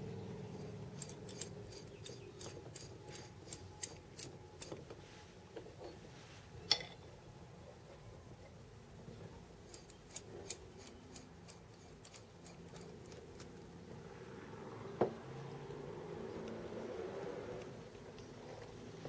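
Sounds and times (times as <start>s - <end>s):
metal parts and tools clicking: 1.0s - 4.8s, 9.7s - 13.6s
soft rustling: 4.9s - 6.6s.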